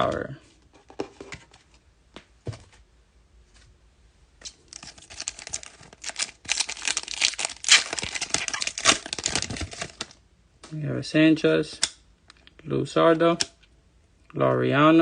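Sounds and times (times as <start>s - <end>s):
card pack wrapper tearing: 4.4s - 10.2s.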